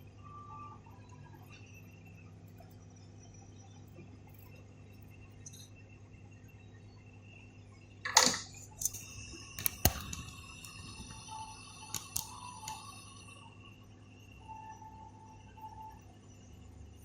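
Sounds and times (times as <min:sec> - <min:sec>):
electrical hum: 0:00.0 - 0:17.0
tools clicking on circuit board: 0:08.1 - 0:11.3, 0:11.9 - 0:13.0
soldering iron hiss: 0:08.8 - 0:14.4.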